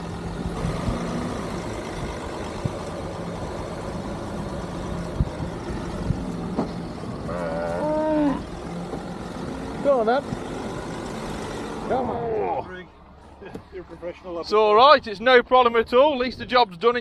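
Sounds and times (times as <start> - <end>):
vehicle engine idling: 0.0 - 16.1.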